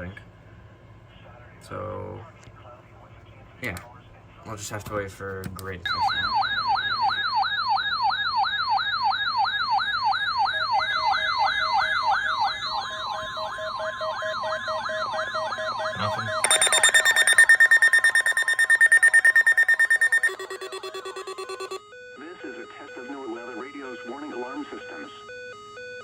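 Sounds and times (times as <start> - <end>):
fast-pulsing beeping alarm: 5.9 - 26.0
siren-like warbling alarm: 5.9 - 26.0
steady alarm tones: 5.9 - 26.0.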